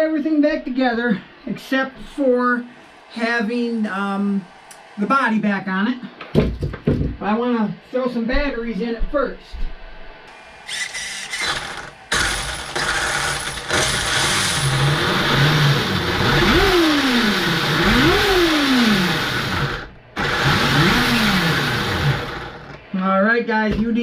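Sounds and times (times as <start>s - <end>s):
toy truck electric motor whine: 10.3s - 22.9s.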